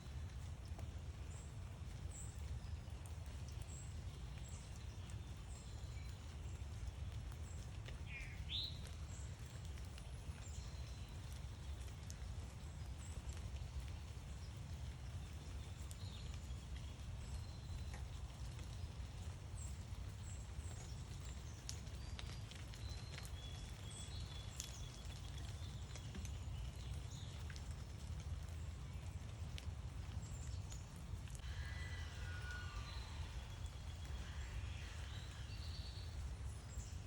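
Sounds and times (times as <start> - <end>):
low rumble: 28.4 - 37.0.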